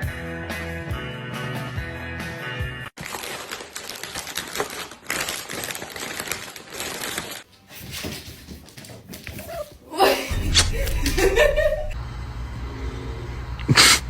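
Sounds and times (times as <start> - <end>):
music: 0.0 - 2.9.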